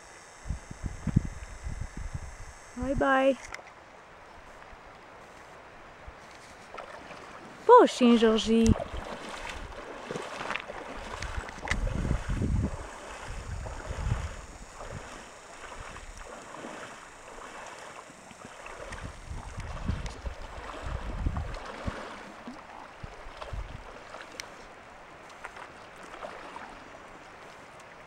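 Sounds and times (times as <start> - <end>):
wind rumbling on microphone: 0.0 - 3.4, 7.5 - 24.2
river water running: 0.0 - 28.0.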